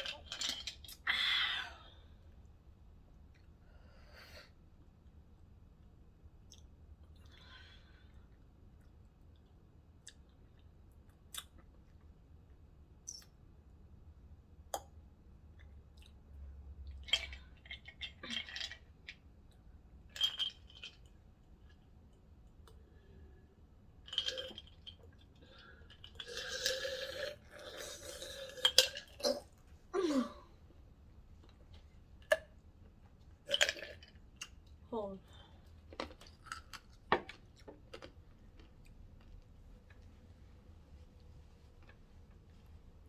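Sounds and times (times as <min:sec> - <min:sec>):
chewing and mouth sounds: 0:08.7 - 0:12.2, 0:15.5 - 0:22.8, 0:35.6 - 0:40.1.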